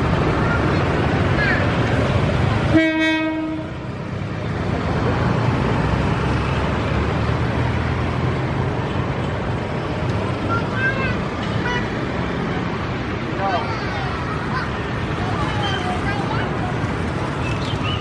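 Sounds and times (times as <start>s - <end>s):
train rumbling: 0.0s - 18.0s
locomotive horn blast: 2.6s - 3.8s.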